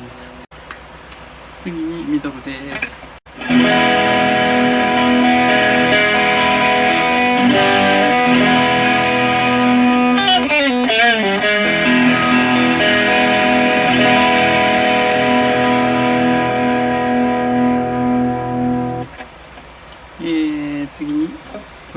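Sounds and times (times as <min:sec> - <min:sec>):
overdriven electric guitar chords: 0:03.3 - 0:19.4.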